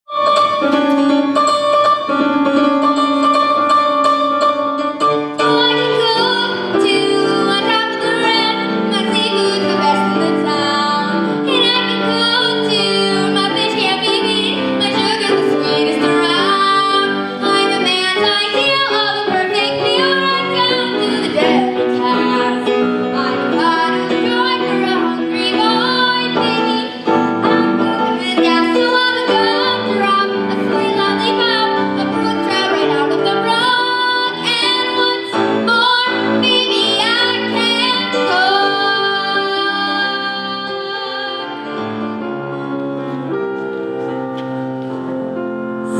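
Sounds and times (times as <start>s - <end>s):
piano accompaniment: 0.0s - 45.9s
woman singing: 5.3s - 41.8s.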